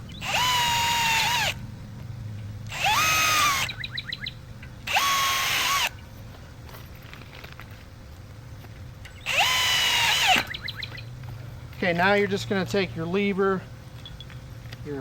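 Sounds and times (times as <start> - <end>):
power drill driving screws into metal: 0.2 - 1.6, 2.7 - 3.7, 4.9 - 5.9, 9.2 - 10.5.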